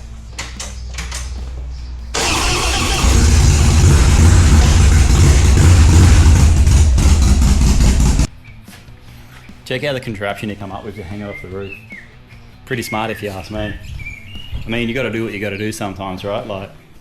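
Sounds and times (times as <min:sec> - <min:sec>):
motorcycle engine starting and running: 0:02.2 - 0:08.3.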